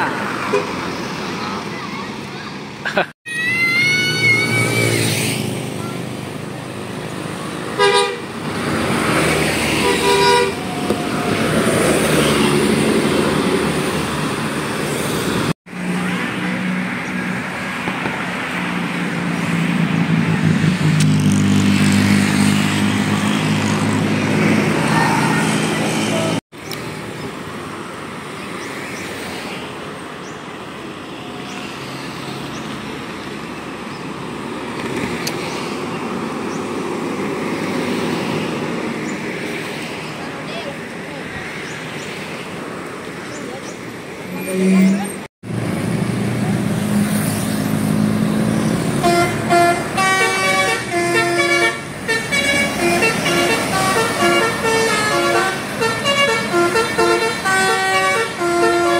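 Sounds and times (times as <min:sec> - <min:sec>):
buses driving past: 0:00.0 - 0:58.9
road traffic noise: 0:00.0 - 0:58.9
musical bus horn blast: 0:07.8 - 0:08.3, 0:09.8 - 0:10.6, 0:49.0 - 0:58.9.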